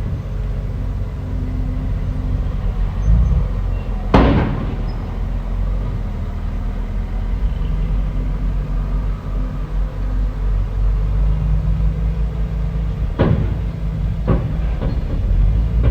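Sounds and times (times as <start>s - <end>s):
diesel engine rumbling: 0.0s - 15.9s
loud sharp bang: 3.2s - 5.3s.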